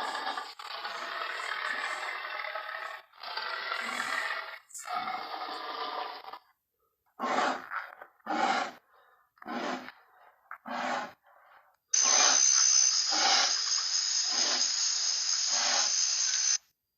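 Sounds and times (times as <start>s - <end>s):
creature heavy breathing: 7.2s - 16.5s
loud steady hiss: 12.0s - 16.6s.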